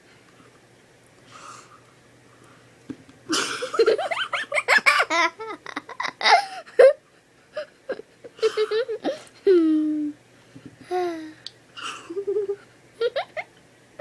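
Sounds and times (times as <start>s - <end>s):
people giggling: 3.3s - 7.0s, 12.1s - 13.5s.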